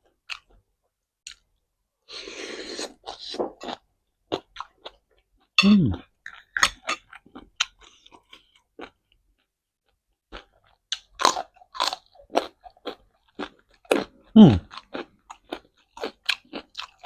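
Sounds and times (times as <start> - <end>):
crunching and chewing carrot: 6.3 - 9.5, 10.3 - 17.0.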